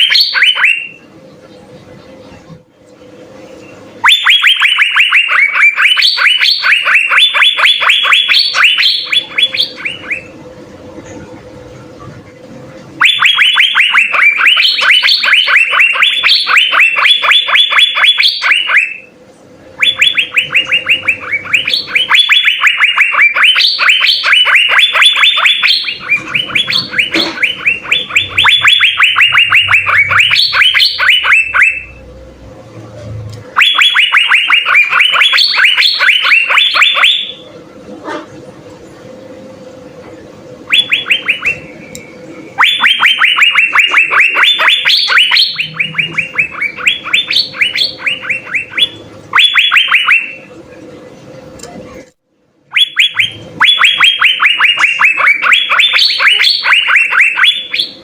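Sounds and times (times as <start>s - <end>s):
bird singing rapid notes: 0.0s - 1.0s, 3.6s - 10.4s, 13.0s - 19.1s, 19.8s - 32.0s, 33.6s - 37.4s, 40.7s - 50.4s, 52.7s - 58.0s.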